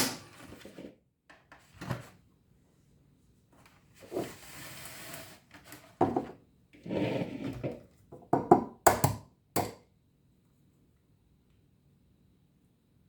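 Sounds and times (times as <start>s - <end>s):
rustle on kitchen counter: 3.5s - 6.2s
objects knocking and clattering: 7.6s - 9.7s.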